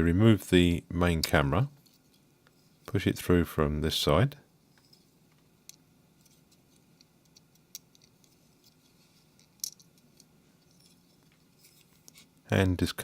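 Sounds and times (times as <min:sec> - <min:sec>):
small phone parts clicking: 0:05.6 - 0:08.8.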